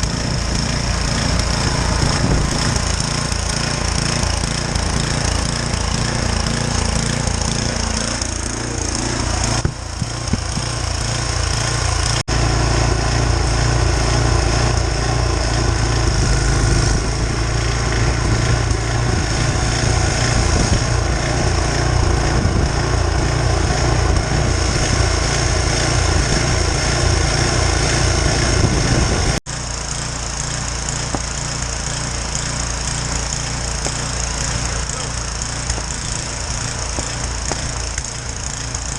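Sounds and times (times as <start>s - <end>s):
snow-clearing machine running: 0.0s - 38.9s.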